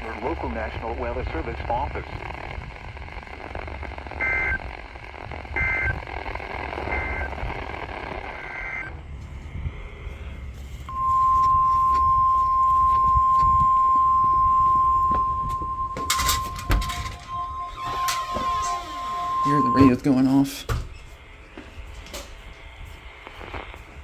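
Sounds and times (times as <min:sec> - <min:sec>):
warbling digital data tones: 0:00.0 - 0:09.0, 0:10.9 - 0:20.6
static hiss: 0:00.0 - 0:21.6, 0:22.2 - 0:24.0
radio warning alarm tone: 0:04.0 - 0:04.9, 0:05.5 - 0:09.0, 0:10.9 - 0:20.6.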